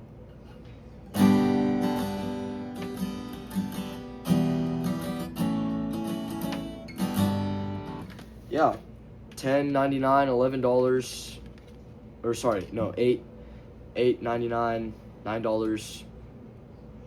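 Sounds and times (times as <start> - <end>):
acoustic guitar strumming chords: 1.1 - 8.2.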